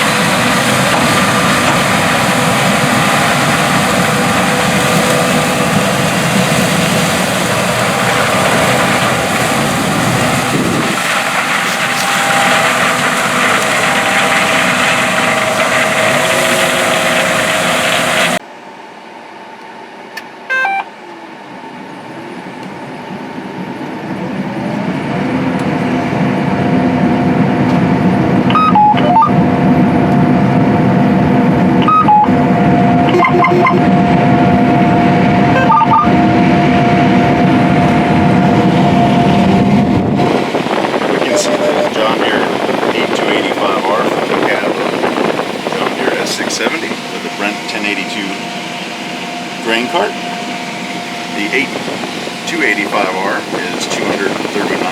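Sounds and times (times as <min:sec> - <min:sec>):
machine engine revving: 0:00.0 - 0:18.4, 0:21.8 - 0:54.9
combine engine and threshing noise: 0:00.0 - 0:18.7, 0:19.4 - 0:54.9
steady whine: 0:00.0 - 0:54.9
short electronic beeps: 0:20.5 - 0:20.9, 0:28.5 - 0:29.3, 0:31.8 - 0:32.3, 0:33.0 - 0:33.9, 0:35.5 - 0:36.1, 0:41.2 - 0:42.2.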